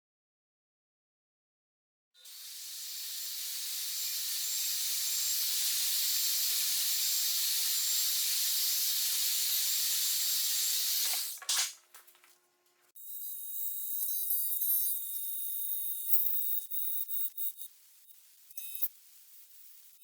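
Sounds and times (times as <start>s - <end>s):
loud steady hiss: 2.3s - 11.8s.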